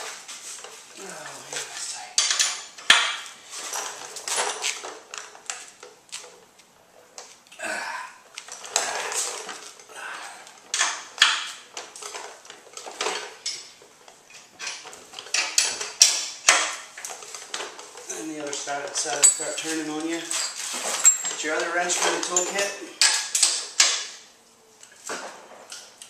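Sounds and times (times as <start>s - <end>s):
steel hand tools clinking and scraping: 17.0s - 24.0s.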